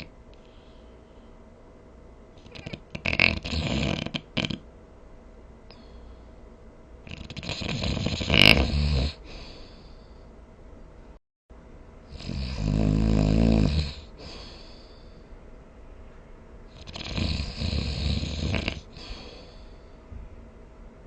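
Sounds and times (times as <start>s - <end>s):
person snoring: 2.4s - 4.6s, 7.1s - 9.9s, 12.1s - 15.0s, 16.8s - 19.7s.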